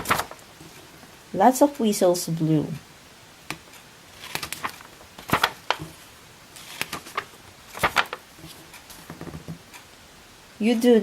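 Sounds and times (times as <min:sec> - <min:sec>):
paper page rustling: 0:00.0 - 0:01.0, 0:04.1 - 0:09.6.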